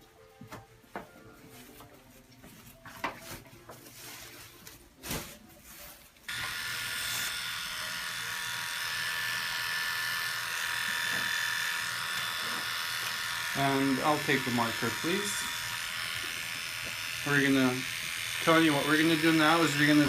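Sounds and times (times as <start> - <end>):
electric hair clippers buzzing: 6.3 - 20.0.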